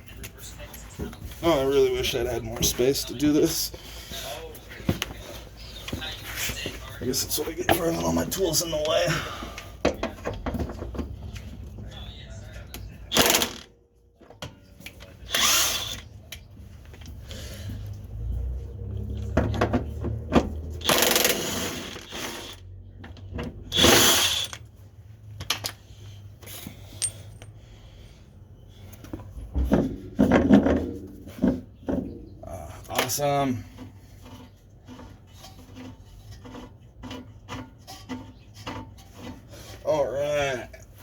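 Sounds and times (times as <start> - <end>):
power tool bursts: 13.1 - 13.7, 15.3 - 16.0, 20.8 - 22.6, 23.7 - 24.6.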